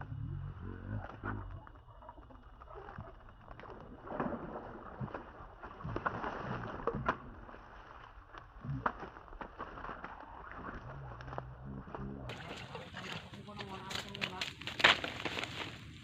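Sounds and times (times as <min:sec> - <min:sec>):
water sloshing and splashing: 0:01.0 - 0:11.4, 0:12.2 - 0:16.0
rustles: 0:05.0 - 0:16.0.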